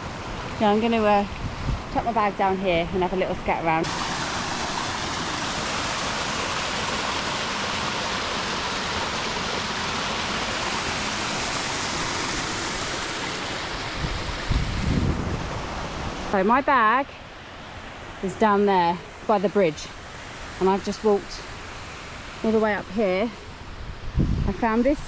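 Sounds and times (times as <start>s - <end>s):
mountain stream rushing: 0.0s - 23.9s
wind buffeting microphone: 0.6s - 3.8s, 13.9s - 16.3s, 22.7s - 25.0s.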